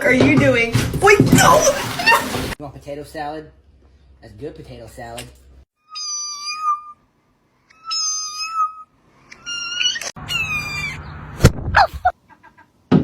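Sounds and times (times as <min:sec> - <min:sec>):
cat meowing: 0:05.9 - 0:07.0, 0:07.7 - 0:11.0.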